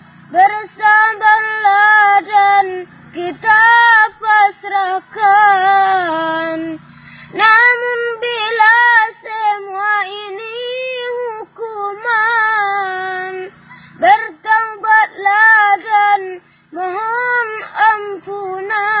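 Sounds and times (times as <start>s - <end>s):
child singing: 0.4s - 6.8s, 7.4s - 19.0s.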